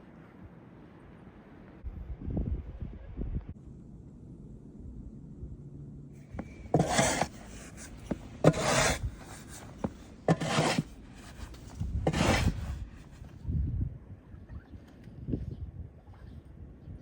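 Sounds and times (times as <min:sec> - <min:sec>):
rasping scrapes: 0:06.4 - 0:13.2.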